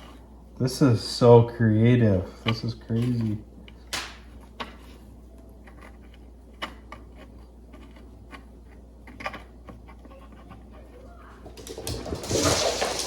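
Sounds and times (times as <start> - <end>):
low steady hum: 0.0 - 13.0.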